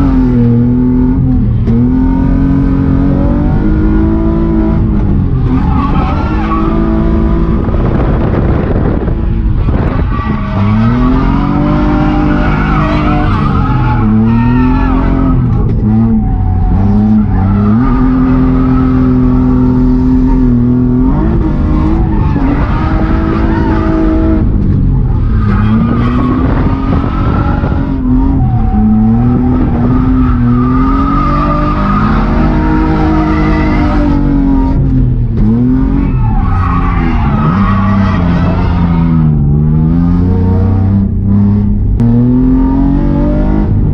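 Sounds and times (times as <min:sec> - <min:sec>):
car engine revving hard: 0:00.0 - 0:43.9.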